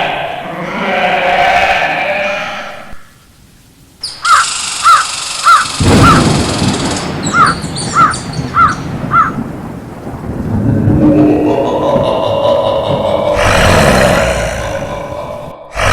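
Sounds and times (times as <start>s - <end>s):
windy hiss: 0.0s - 15.9s
crow cawing: 4.2s - 6.4s, 7.3s - 9.4s
low rumble: 7.2s - 15.9s.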